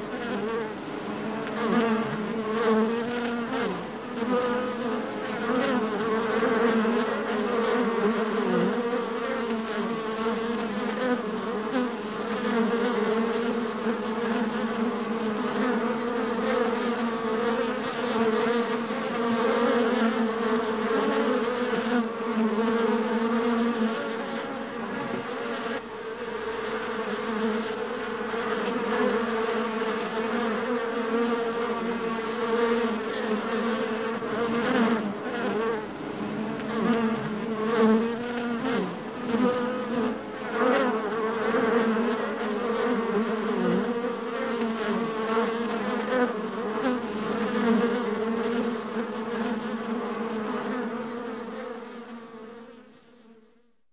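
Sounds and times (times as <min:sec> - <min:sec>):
honeybees buzzing in a hive: 0:00.0 - 0:53.7.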